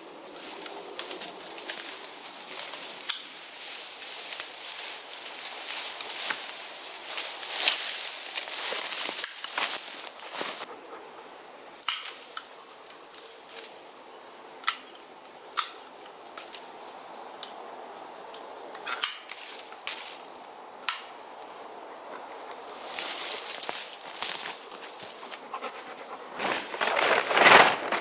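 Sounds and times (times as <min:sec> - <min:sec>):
stalks rustling: 0:00.0 - 0:10.7, 0:22.2 - 0:28.0.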